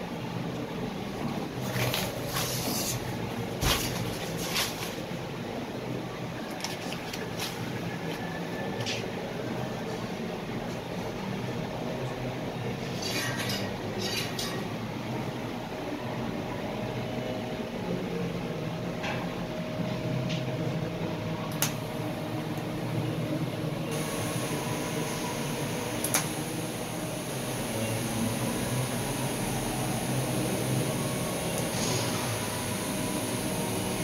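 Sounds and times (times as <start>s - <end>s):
welding arc hissing crackle: 23.9s - 34.0s.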